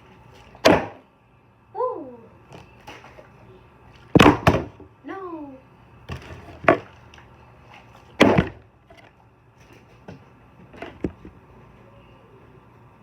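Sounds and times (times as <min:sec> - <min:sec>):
plastic bottle knocking on wood: 0:04.2 - 0:04.9.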